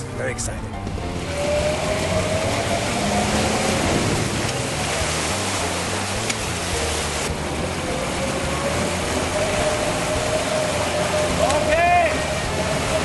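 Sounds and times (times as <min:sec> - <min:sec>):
motorboat engine running: 0:00.0 - 0:13.0
rushing water: 0:00.0 - 0:13.0
wind noise: 0:00.8 - 0:06.8.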